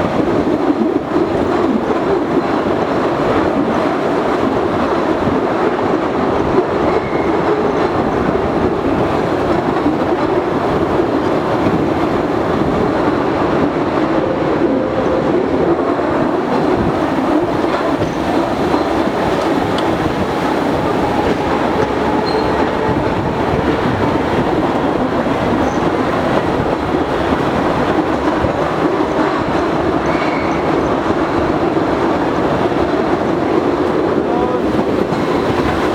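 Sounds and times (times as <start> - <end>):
train wheels clattering on rail: 0.0 - 35.9
faint wheel squeals: 20.9 - 22.8, 30.0 - 30.8.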